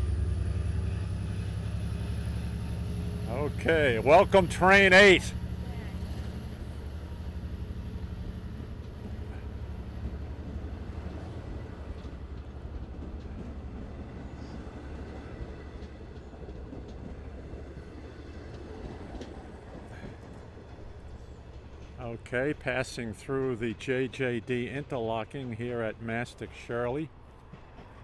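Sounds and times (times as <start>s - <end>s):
locomotive engine drone: 0.0s - 12.6s
rolling train rumble: 0.0s - 28.0s.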